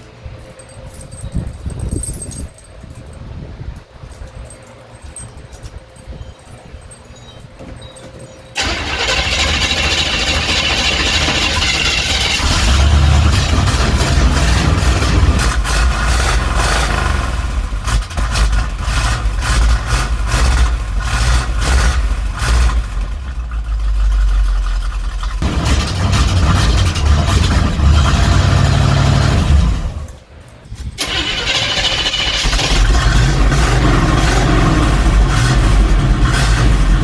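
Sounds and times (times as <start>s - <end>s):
engine running with uneven beat: 8.6s - 30.2s, 32.5s - 37.0s
pickup truck engine starting: 8.6s - 30.2s, 31.0s - 37.0s.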